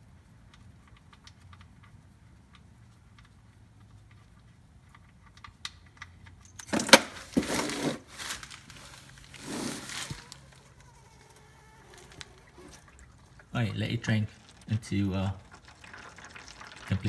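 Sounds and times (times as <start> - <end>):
clattering handling noise: 6.4 - 13.0.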